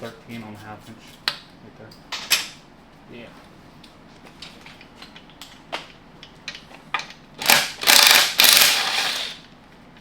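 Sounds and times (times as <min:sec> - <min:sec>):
rapid ratcheting: 0:07.4 - 0:09.4
ratchet clicking: 0:07.4 - 0:09.4.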